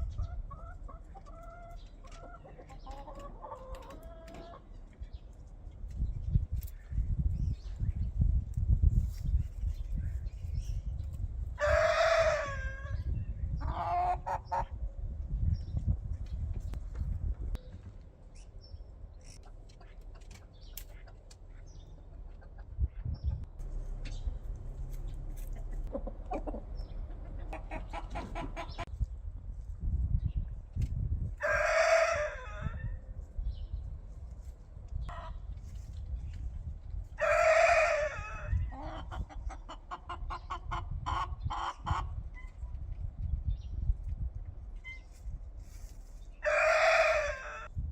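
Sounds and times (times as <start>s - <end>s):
chickens clucking: 0.0s - 5.1s, 11.2s - 14.9s, 19.2s - 29.1s, 35.1s - 36.0s, 37.2s - 42.7s
steady low rumble: 21.7s - 31.4s
rooster crowing: 31.4s - 32.8s, 46.4s - 47.7s.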